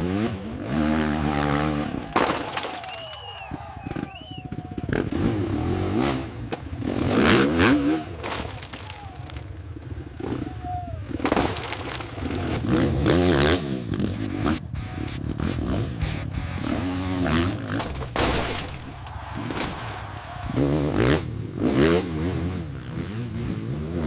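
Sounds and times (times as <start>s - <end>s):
dirt bike engine revving: 0.0s - 2.1s, 4.8s - 8.2s, 12.4s - 18.2s, 19.1s - 24.0s
scraping and clattering knocks: 17.7s - 20.1s.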